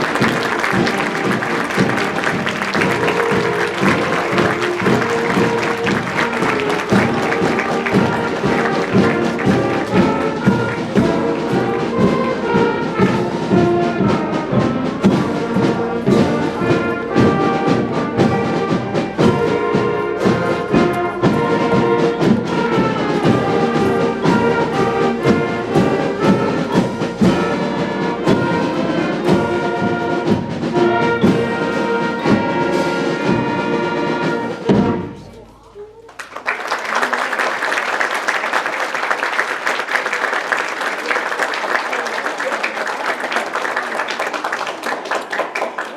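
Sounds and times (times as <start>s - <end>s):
brass band music: 0.0s - 35.3s.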